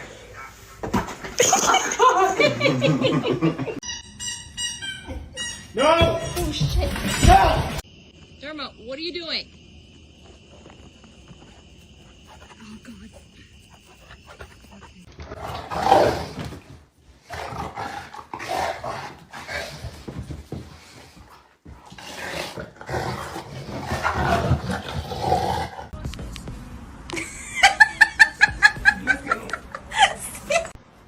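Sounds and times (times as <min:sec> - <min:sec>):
dog high-pitched notes: 0:03.8 - 0:07.3.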